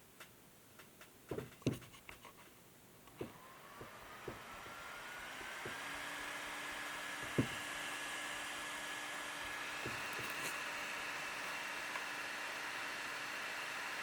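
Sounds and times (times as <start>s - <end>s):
laptop cooling fan whirring: 3.1s - 14.0s.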